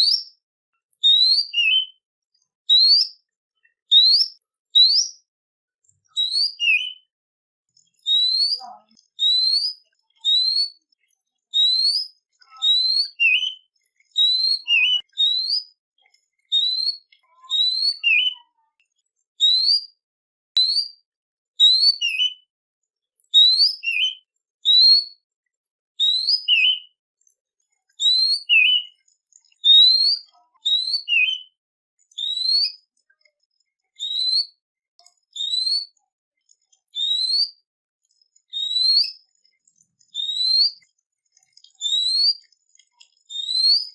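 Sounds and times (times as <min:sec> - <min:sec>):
songbird whistled call: 0:01.0 - 0:02.0, 0:02.7 - 0:03.2, 0:03.9 - 0:05.2, 0:06.2 - 0:07.1, 0:08.0 - 0:10.8, 0:11.5 - 0:15.8, 0:16.5 - 0:18.4, 0:19.4 - 0:20.0, 0:20.6 - 0:21.0, 0:21.6 - 0:22.5, 0:23.4 - 0:25.1, 0:26.0 - 0:27.0, 0:28.0 - 0:29.0, 0:29.6 - 0:31.6, 0:32.2 - 0:32.8, 0:34.0 - 0:34.6, 0:35.2 - 0:36.0, 0:37.0 - 0:37.6, 0:38.5 - 0:39.2, 0:40.1 - 0:40.8, 0:41.8 - 0:42.4, 0:43.4 - 0:43.9.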